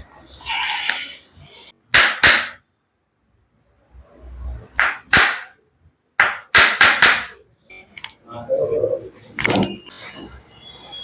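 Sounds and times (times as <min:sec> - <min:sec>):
sharp chiropractic strikes: 0:01.9 - 0:02.6, 0:04.8 - 0:05.6, 0:06.2 - 0:07.4.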